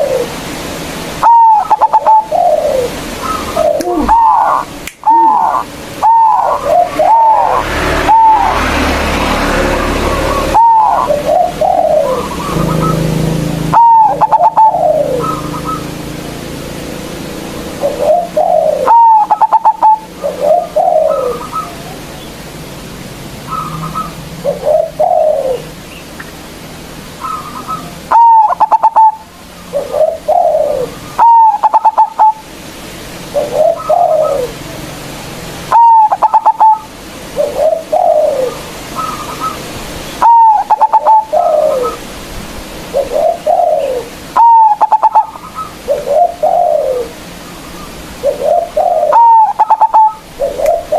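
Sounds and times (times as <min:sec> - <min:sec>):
dove cooing: 0:00.0 - 0:00.5, 0:01.2 - 0:16.4, 0:17.7 - 0:22.2, 0:23.4 - 0:25.8, 0:27.2 - 0:32.4, 0:33.3 - 0:34.8, 0:35.6 - 0:50.9.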